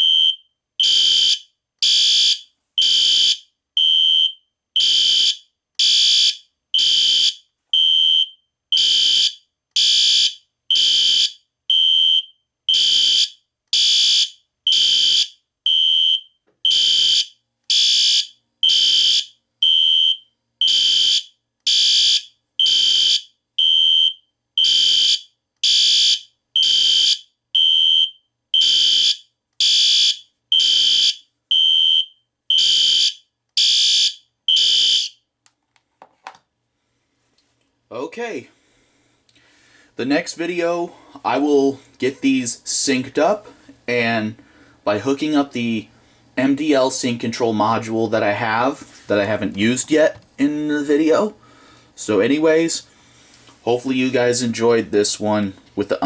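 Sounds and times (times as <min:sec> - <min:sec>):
fire alarm horns beeping: 0:00.0 - 0:35.2.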